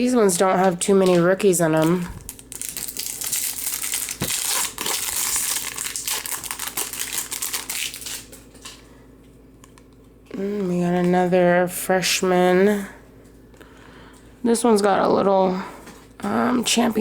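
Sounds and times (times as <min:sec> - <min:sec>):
foil wrapper crinkling: 0:00.7 - 0:08.9.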